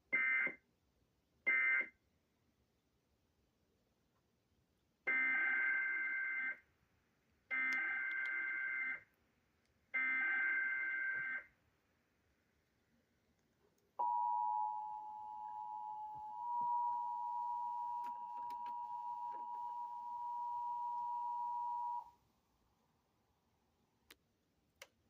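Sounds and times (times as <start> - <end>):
steady warning alarm tone: 14.0 - 22.1.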